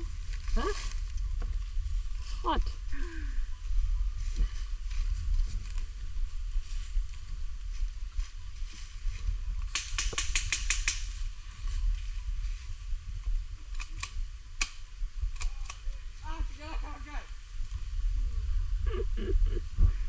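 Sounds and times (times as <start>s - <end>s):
low rumble: 17.2s - 20.0s.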